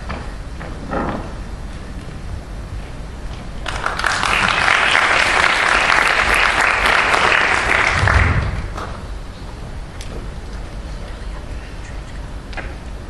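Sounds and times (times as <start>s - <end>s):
audience applauding: 3.6s - 8.9s.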